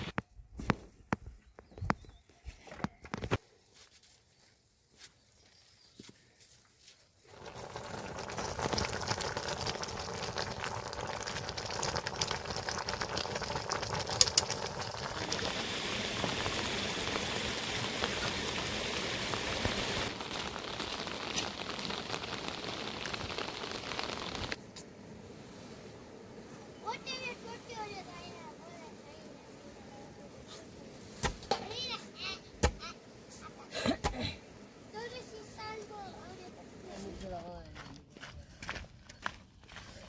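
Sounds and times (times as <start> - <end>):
food sizzling in hot oil: 7.3 - 24.6.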